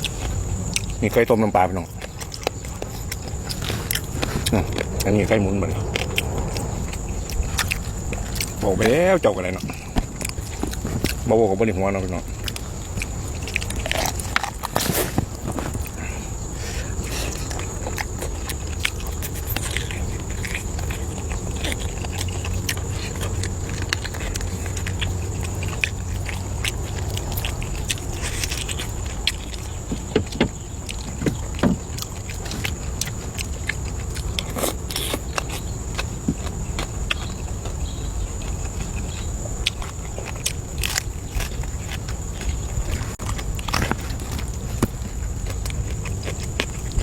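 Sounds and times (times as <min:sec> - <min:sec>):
person chewing food: 0:00.0 - 0:47.0
low rumble: 0:03.2 - 0:11.3.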